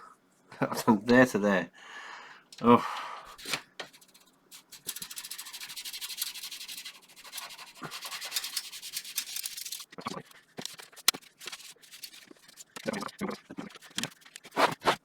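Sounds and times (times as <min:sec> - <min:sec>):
wipe scratchy rubbing: 0:03.4 - 0:15.0.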